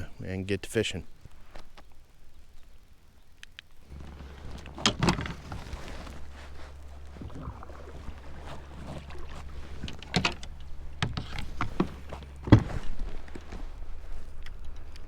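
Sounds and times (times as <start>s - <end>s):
knocks and clunks on a kayak: 3.9s - 15.0s
low rumble: 3.9s - 15.0s.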